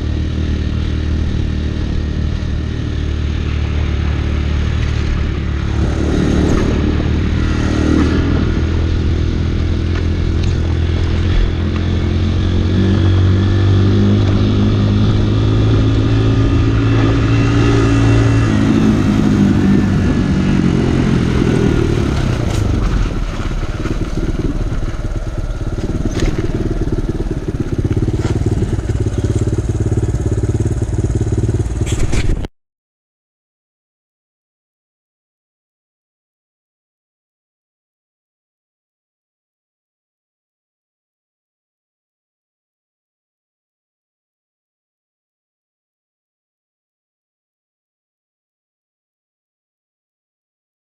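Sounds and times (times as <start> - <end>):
dirtbike engine running: 0.0 - 32.5.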